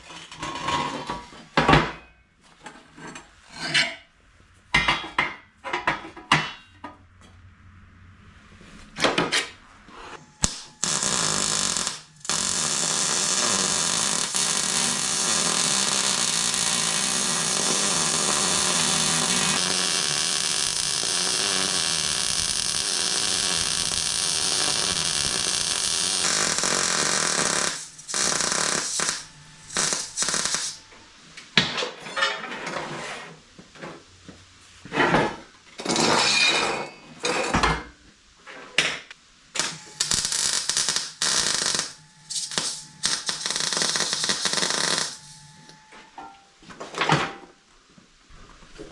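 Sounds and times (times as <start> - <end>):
electric arc welding: 10.3 - 30.9, 39.5 - 45.8.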